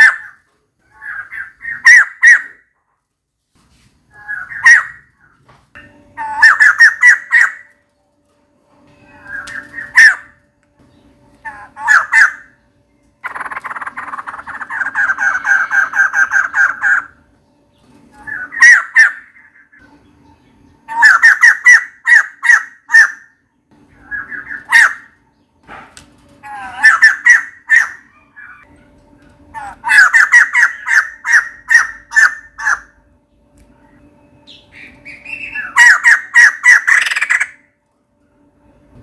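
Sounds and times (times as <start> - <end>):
bird harsh chattering: 0.0 - 2.6, 4.2 - 5.1, 6.2 - 7.7, 9.3 - 10.4, 11.4 - 12.5, 13.2 - 17.2, 18.2 - 19.8, 20.9 - 23.3, 24.0 - 25.2, 26.4 - 28.6, 29.6 - 32.9, 34.5 - 37.6.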